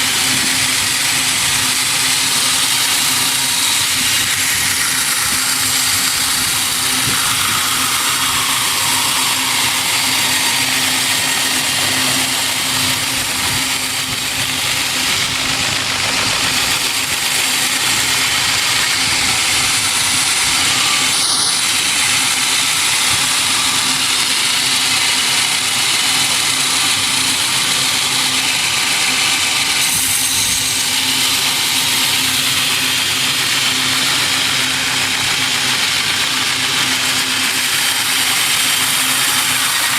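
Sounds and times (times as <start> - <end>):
loud high hiss: 0.0 - 39.9
machinery hum: 0.0 - 39.9.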